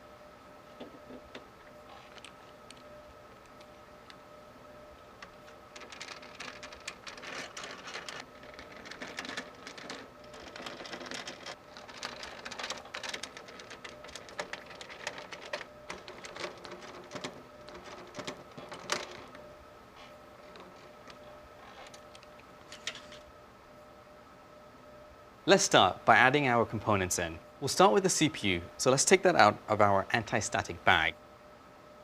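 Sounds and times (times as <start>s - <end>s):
faint steady whine: 0.0s - 32.0s
plastic packaging rustling: 5.8s - 19.2s
computer parts clicking: 5.8s - 19.3s.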